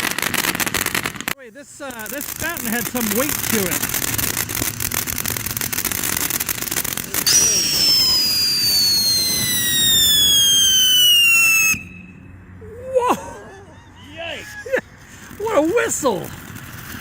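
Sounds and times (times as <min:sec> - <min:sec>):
firework crackling and hissing: 0:00.0 - 0:12.0, 0:14.5 - 0:17.0
firework whistle sliding down: 0:07.1 - 0:12.2.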